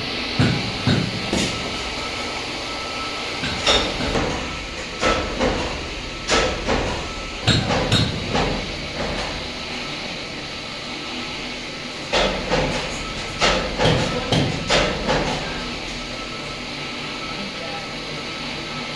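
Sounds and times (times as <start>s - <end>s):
braiding machines clattering: 0.4s - 16.8s.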